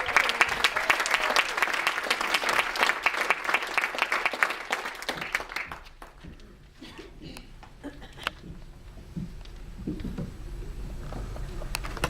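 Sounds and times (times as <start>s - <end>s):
audience applauding: 0.0s - 6.4s.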